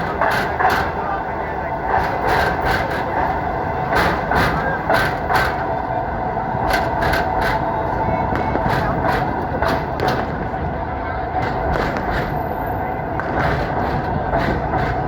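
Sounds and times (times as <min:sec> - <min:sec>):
train rumbling on rails: 0:00.0 - 0:15.0
clacks and rattles: 0:01.8 - 0:05.7, 0:06.6 - 0:07.7, 0:13.2 - 0:15.0.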